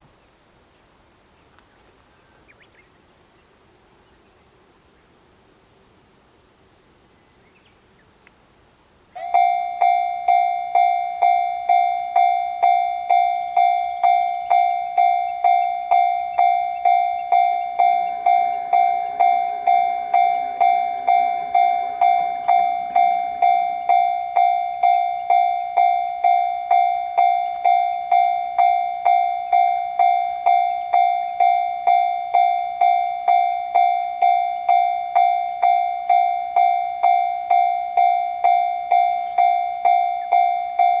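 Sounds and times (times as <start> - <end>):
railroad crossing warning bell: 9.1 - 41.0.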